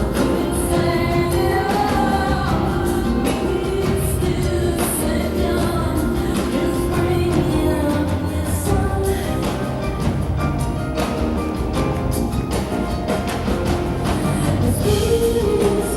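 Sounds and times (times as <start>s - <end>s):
woman singing: 0.0s - 10.5s, 14.0s - 15.9s
rock band playing: 0.0s - 15.9s.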